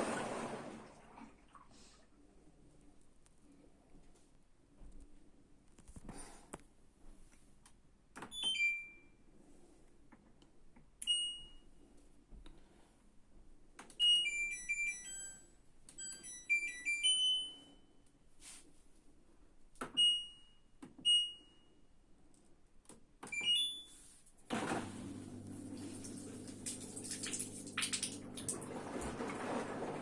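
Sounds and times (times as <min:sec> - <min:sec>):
rushing water: 0:00.0 - 0:01.2, 0:25.6 - 0:30.0
washing machine button beeps: 0:08.3 - 0:09.0, 0:11.0 - 0:11.6, 0:20.0 - 0:21.5, 0:23.3 - 0:23.9.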